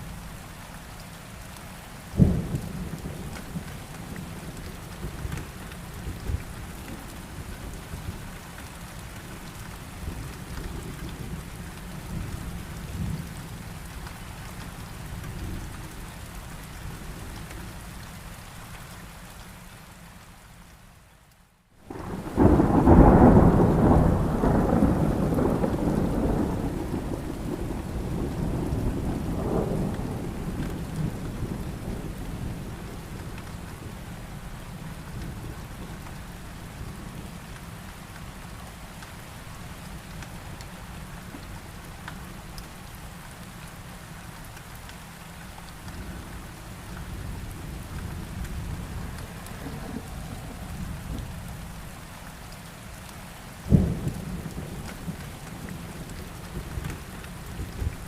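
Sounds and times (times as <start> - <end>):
heavy rain: 0.0 - 58.0
thunder clap and rumble: 21.9 - 34.0, 47.0 - 51.6, 53.6 - 58.0.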